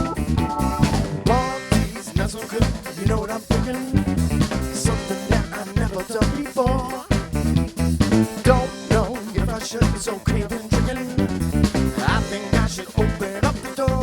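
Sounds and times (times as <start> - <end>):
bass: 0.0 - 14.0
drum kit beat: 0.0 - 14.0
guitar: 0.0 - 14.0.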